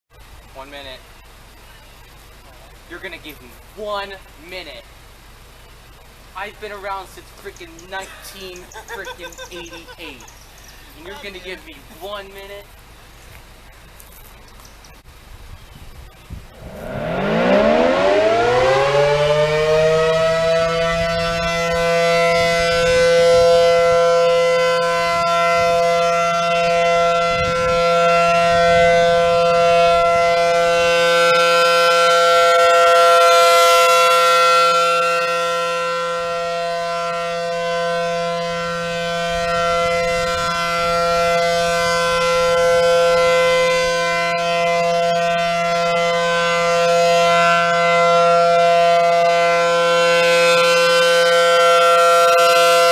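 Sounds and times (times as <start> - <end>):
outdoor warning siren steady tone: 16.0 - 52.9.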